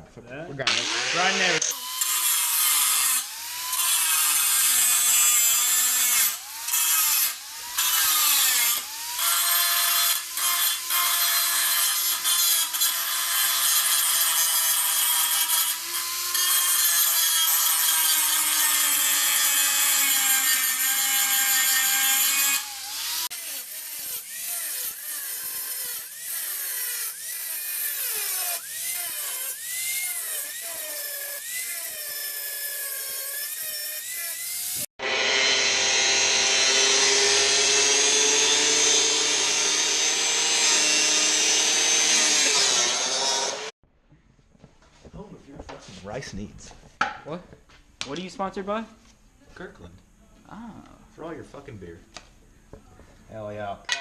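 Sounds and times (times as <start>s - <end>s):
power grinder grinding metal: 0.7s - 43.8s.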